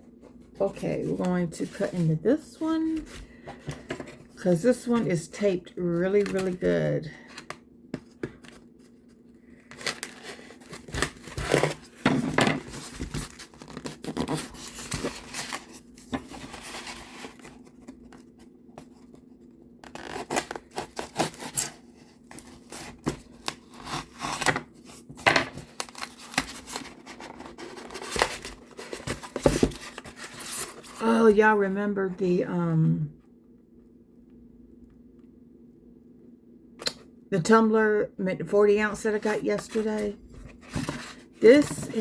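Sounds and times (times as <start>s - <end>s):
tape and packaging tearing: 19.8s - 21.7s.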